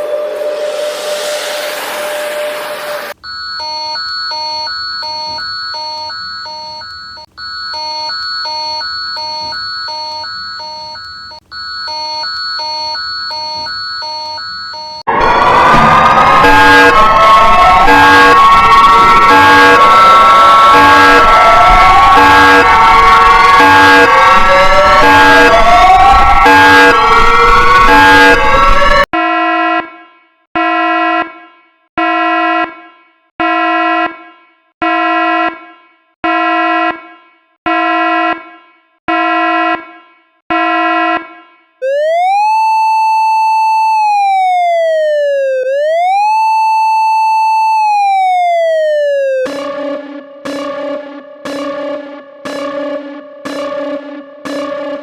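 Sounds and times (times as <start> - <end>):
electronic siren tone: 0.0 - 29.6, 41.8 - 55.0
emergency alert alarm: 3.1 - 29.8, 41.8 - 55.0
chord-like beep: 3.2 - 15.1, 49.2 - 55.0.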